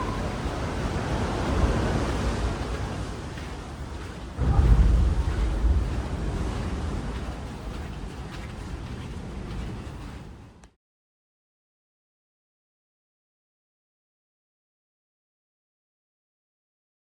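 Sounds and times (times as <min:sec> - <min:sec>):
ocean surf: 0:00.0 - 0:10.6
wind buffeting microphone: 0:00.0 - 0:10.6.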